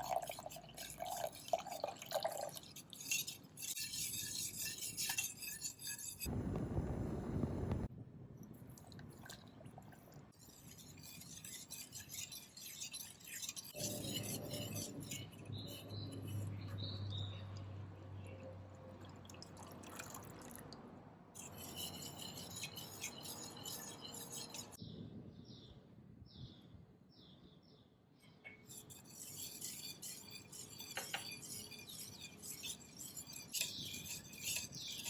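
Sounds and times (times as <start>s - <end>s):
liquid pouring and dripping: 0.0s - 2.8s, 18.9s - 20.9s.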